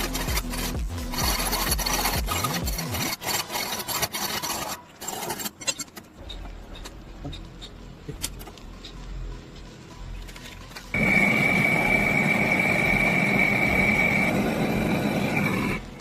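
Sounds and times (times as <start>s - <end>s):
hand scraping or filing: 0.0s - 6.5s
steady low hum: 6.2s - 16.0s.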